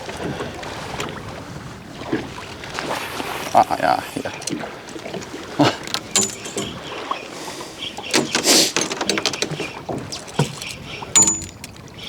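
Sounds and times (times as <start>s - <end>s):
noisy water wash: 0.0s - 8.2s
water lapping against boat hull: 0.0s - 12.0s.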